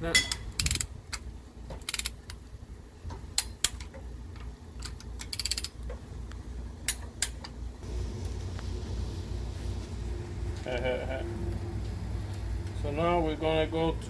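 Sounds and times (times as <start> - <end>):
torque wrench clicking: 0.3 - 1.2, 1.8 - 2.4, 4.8 - 5.9
ratcheting clicks: 0.6 - 1.2, 1.8 - 2.4, 4.8 - 5.8.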